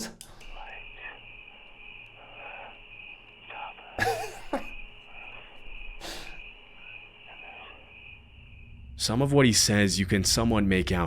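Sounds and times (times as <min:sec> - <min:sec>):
crickets chirping: 0:00.0 - 0:11.0.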